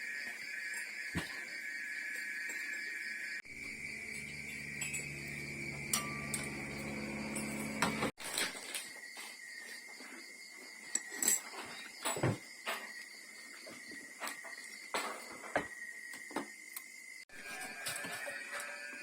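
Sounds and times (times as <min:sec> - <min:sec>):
high insect drone: 0:00.0 - 0:19.0
low hum: 0:03.5 - 0:08.1
utensils and dishes clinking: 0:04.1 - 0:08.9, 0:10.9 - 0:12.9.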